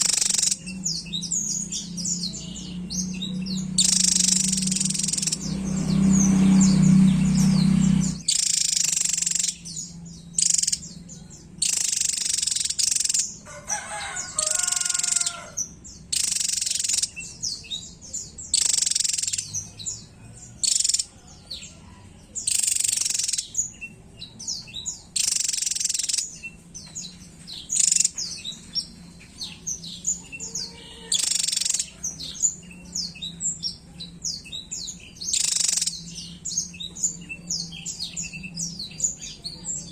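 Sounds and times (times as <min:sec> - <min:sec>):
low hum: 0:00.0 - 0:08.3
bird high-pitched warbling: 0:00.0 - 0:11.0, 0:11.6 - 0:13.4, 0:14.4 - 0:17.6, 0:18.5 - 0:19.8, 0:20.6 - 0:21.3, 0:22.4 - 0:23.8, 0:25.0 - 0:26.5, 0:27.7 - 0:28.3, 0:29.7 - 0:33.2, 0:35.2 - 0:39.9.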